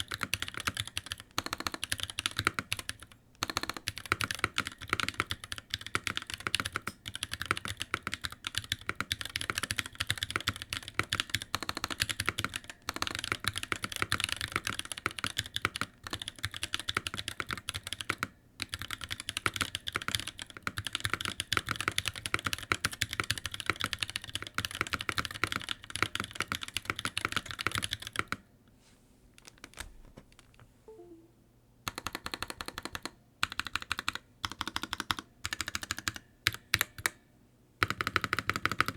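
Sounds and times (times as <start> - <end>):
mechanical keyboard typing: 0.0 - 28.4, 31.9 - 37.2, 37.8 - 38.9.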